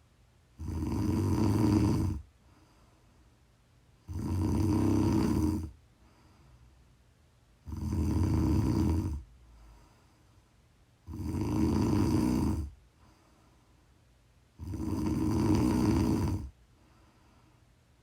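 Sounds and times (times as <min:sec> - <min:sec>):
person snoring: 0:00.6 - 0:02.3, 0:04.0 - 0:05.8, 0:07.6 - 0:09.3, 0:11.0 - 0:12.8, 0:14.6 - 0:16.6.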